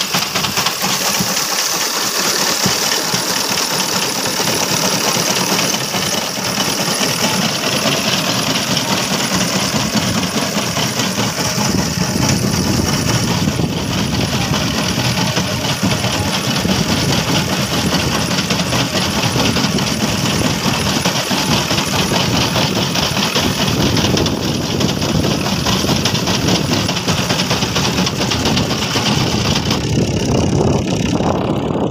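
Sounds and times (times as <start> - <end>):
reaper engine running: 0.0 - 31.9.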